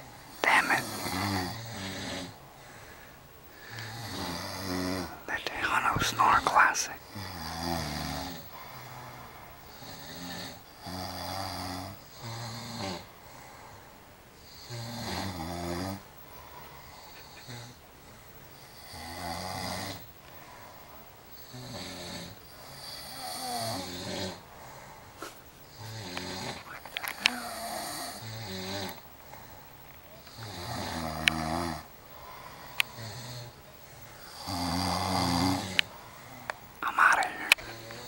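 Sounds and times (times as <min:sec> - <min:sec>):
person snoring: 0:00.4 - 0:02.4, 0:03.6 - 0:13.7, 0:21.5 - 0:24.4, 0:25.7 - 0:29.0, 0:34.3 - 0:38.0.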